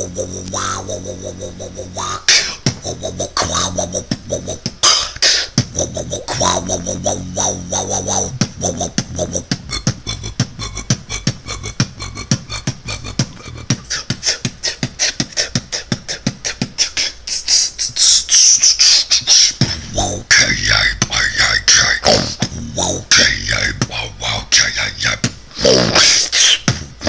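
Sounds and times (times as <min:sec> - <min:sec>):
person beatboxing: 0:00.0 - 0:27.0.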